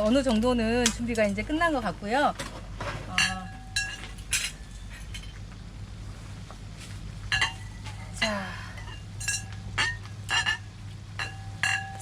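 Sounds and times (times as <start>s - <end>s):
steady low hum: 0.0s - 12.0s
metal utensils clinking on dishes: 3.1s - 5.4s, 7.3s - 12.0s.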